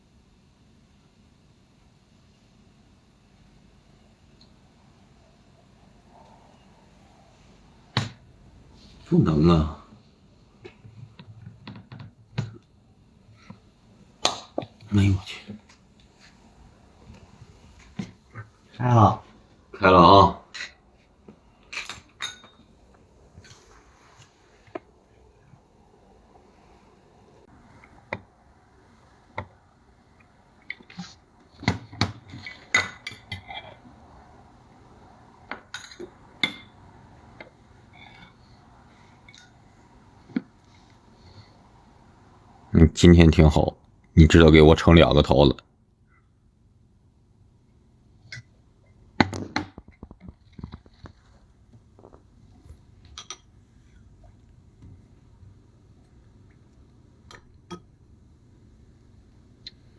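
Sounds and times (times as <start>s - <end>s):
utensils clinking against a dish: 21.7s - 22.7s, 32.3s - 33.8s, 35.7s - 36.8s
cutlery clinking against jar: 21.8s - 22.7s.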